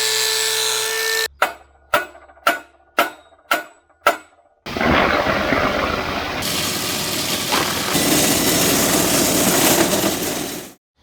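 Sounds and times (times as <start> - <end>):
wood chipper engine running: 4.7 - 10.8.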